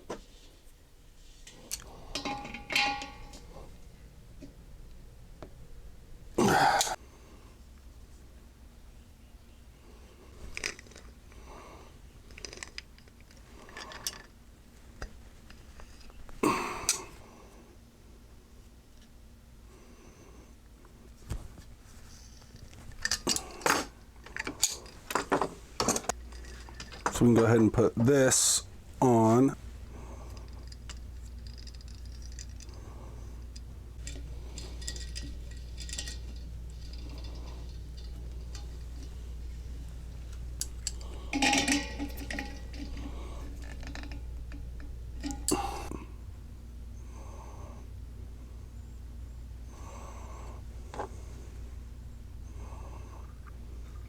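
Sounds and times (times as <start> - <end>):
low steady hum: 0.0 - 54.0
metal fittings clinking: 1.5 - 3.8, 30.3 - 32.8, 33.4 - 45.9
metal scraping: 40.8 - 45.5.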